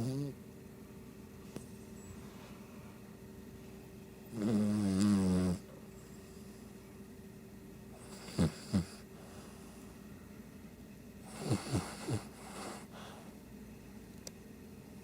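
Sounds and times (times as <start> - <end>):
dog snorting in sleep: 0.0 - 0.4, 4.3 - 6.5, 7.9 - 9.7, 11.2 - 13.3.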